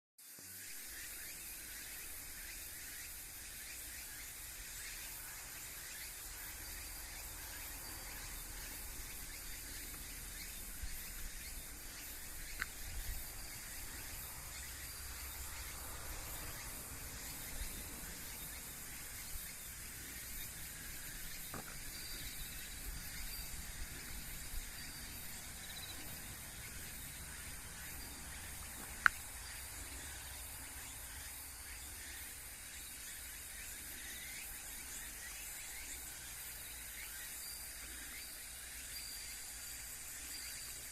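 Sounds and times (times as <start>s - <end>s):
insects hissing: 0.2s - 40.9s
faint ticks: 7.6s - 30.2s.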